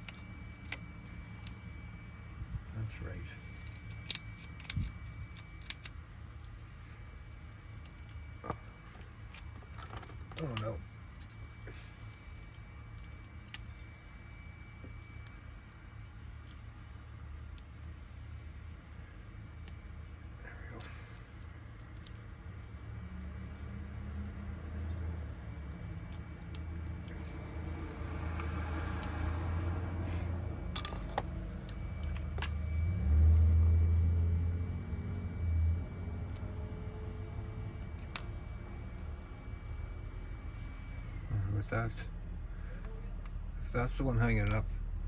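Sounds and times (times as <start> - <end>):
low hum: 0.0 - 45.0
metal clicks of lock parts and key: 3.6 - 6.6, 21.4 - 22.7, 30.7 - 32.7
metal lock parts handled: 3.6 - 13.9, 20.8 - 22.2, 30.7 - 32.7.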